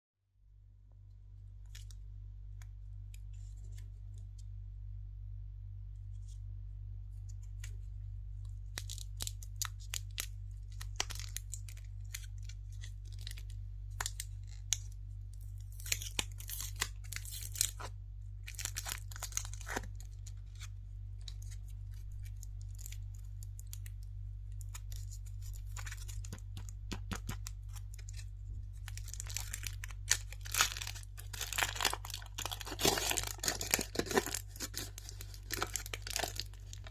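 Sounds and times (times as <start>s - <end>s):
low electrical hum: 0.2s - 36.9s
wrapper tearing and crinkling: 8.7s - 14.9s, 15.6s - 24.0s, 24.6s - 36.9s.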